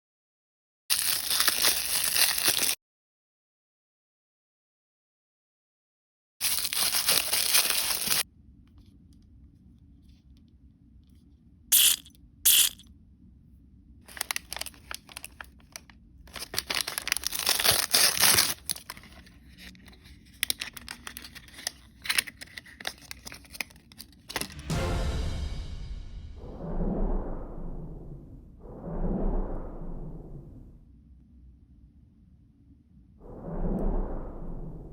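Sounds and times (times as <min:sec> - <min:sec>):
plastic crinkling and rustling: 0:00.9 - 0:02.8, 0:06.4 - 0:08.2, 0:14.1 - 0:24.5
plastic packaging ripping: 0:00.9 - 0:02.8, 0:06.4 - 0:08.2, 0:14.1 - 0:19.7, 0:20.3 - 0:24.5.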